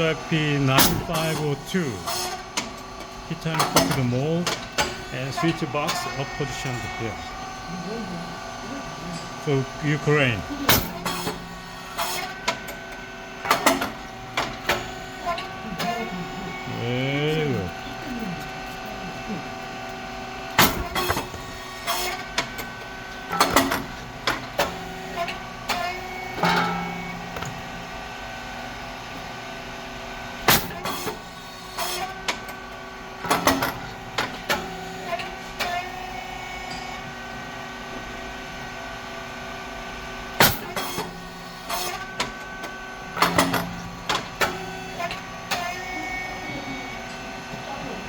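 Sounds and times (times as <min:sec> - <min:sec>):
steady machine hum: 0:00.0 - 0:48.0
loud sharp pop of machine: 0:00.8 - 0:01.1, 0:10.7 - 0:11.4, 0:20.6 - 0:22.2, 0:30.4 - 0:31.1, 0:40.4 - 0:41.1
machine clicks and knocks: 0:03.5 - 0:05.0, 0:13.4 - 0:14.8, 0:23.3 - 0:24.7, 0:43.2 - 0:44.6.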